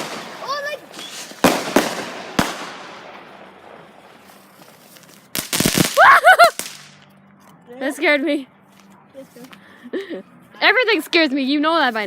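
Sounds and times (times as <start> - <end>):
fireworks bangs and cracks: 0.0 - 4.3, 5.0 - 7.0.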